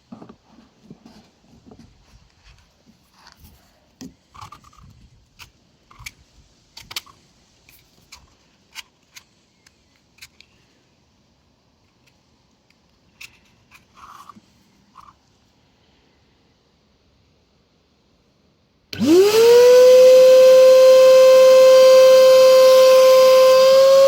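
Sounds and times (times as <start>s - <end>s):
plastic parts clicking: 4.3s - 10.6s.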